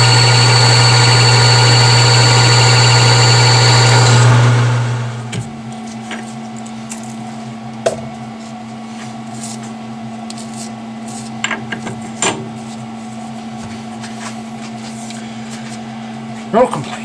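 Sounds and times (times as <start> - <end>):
metal lathe humming: 0.0 - 5.4.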